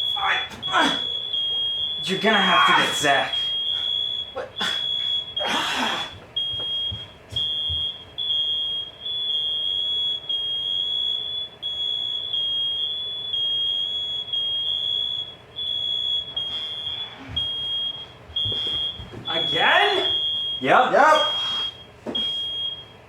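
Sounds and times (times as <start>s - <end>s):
smoke alarm high-pitched tone: 0.0s - 23.0s.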